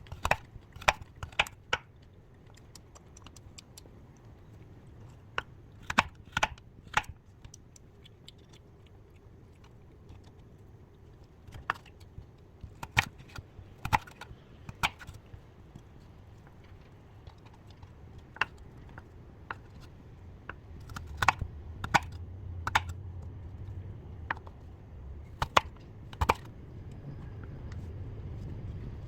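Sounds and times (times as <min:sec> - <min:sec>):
sharp taps and clicks: 0:20.5 - 0:23.3.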